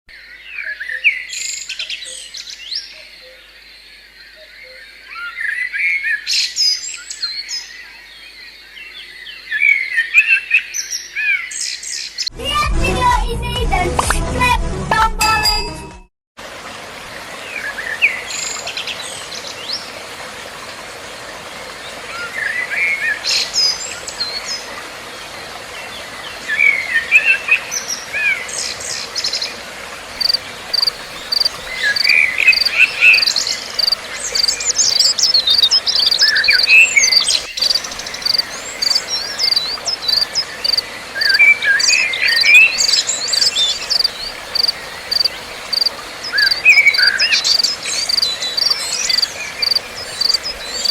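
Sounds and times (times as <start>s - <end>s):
steady high chirp: 30.2s - 41.5s, 42.3s - 50.9s
birds twittering: 30.2s - 50.9s.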